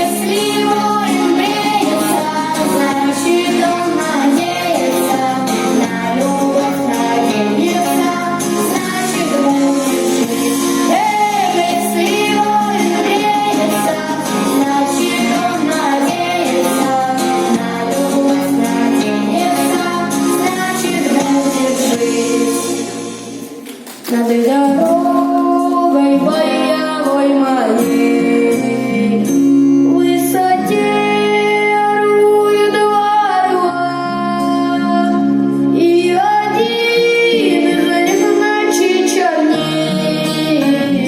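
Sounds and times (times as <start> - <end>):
vocal group singing: 0.0 - 29.4
instrumental backing music: 0.0 - 41.0.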